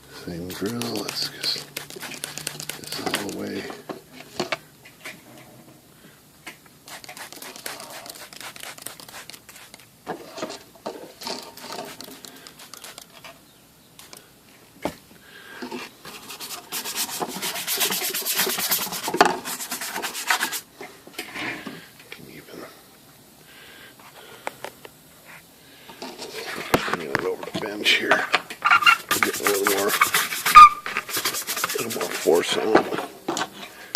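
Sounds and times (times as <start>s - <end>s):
hand scrubbing a case lid: 0.3s - 3.6s, 6.9s - 9.9s, 16.1s - 20.7s, 28.6s - 32.9s.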